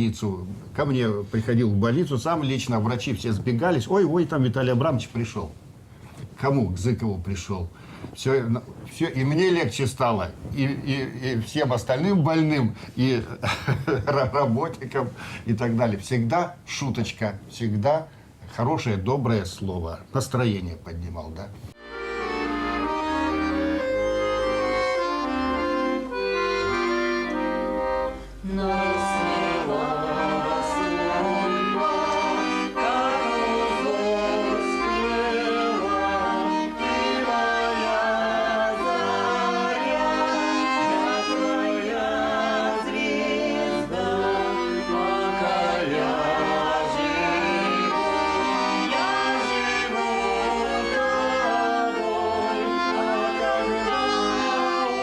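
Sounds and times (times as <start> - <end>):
accordion playing folk tune: 21.8 - 55.0.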